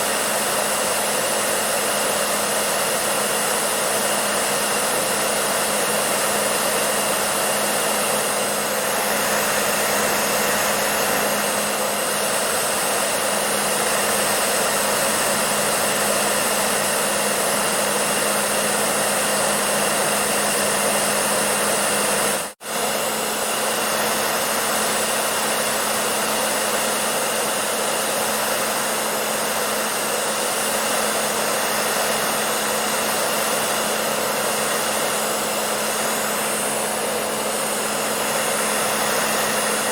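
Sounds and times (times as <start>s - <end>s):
hair dryer running: 0.0s - 39.9s.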